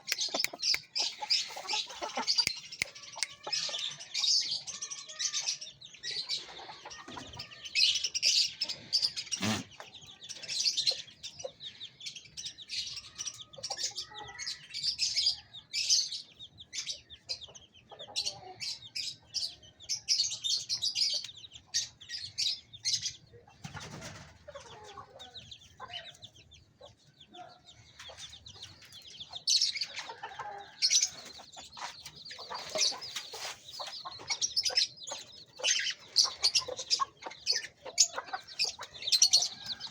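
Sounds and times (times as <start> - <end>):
chickens clucking: 0.0 - 39.9
small birds chirping: 0.0 - 39.9.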